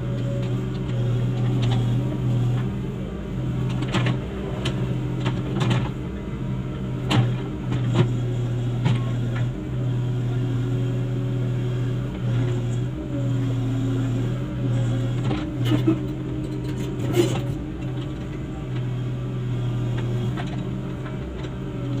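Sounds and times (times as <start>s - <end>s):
excavator diesel engine humming: 0.0s - 22.0s.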